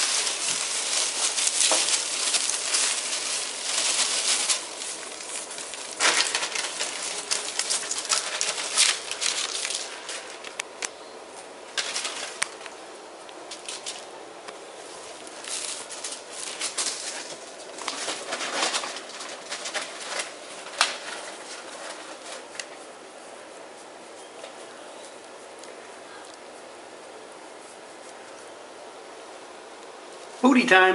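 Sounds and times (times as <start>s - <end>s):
ferrets rustling and scrabbling: 0.0s - 30.5s.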